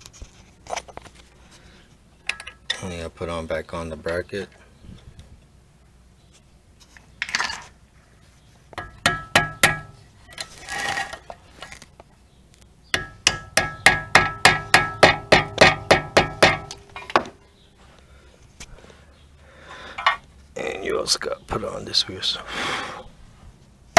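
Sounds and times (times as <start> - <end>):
hammer blows on metal: 12.9 - 16.8.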